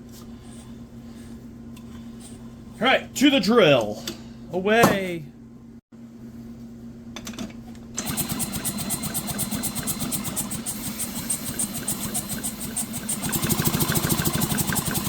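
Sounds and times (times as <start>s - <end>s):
chainsaw engine turning over: 8.0s - 15.0s
power drill spinning: 8.0s - 15.0s.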